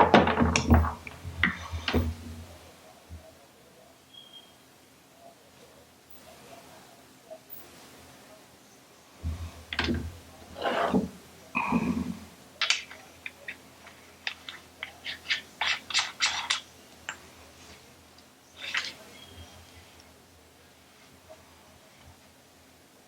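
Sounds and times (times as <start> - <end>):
small parts knocking and scraping: 0.0 - 2.5, 12.0 - 17.4, 18.1 - 19.2.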